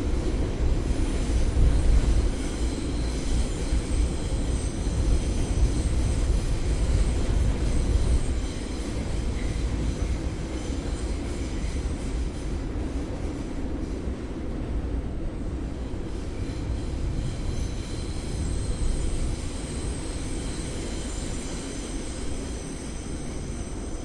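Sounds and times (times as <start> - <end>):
subway train wheels rumbling: 0.0 - 24.0
wheel squeal: 16.4 - 24.0.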